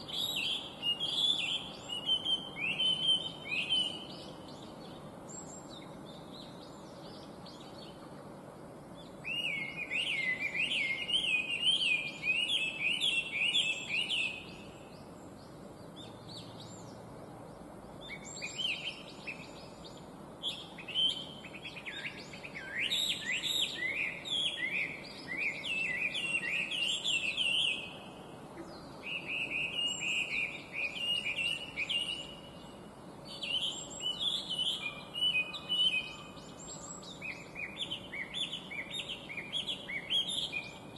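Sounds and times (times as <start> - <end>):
songbird whistling phrases: 0.1 - 4.3, 9.2 - 14.7, 20.4 - 28.1, 28.7 - 32.5, 33.3 - 40.9
faint high bird chirps: 9.0 - 40.9.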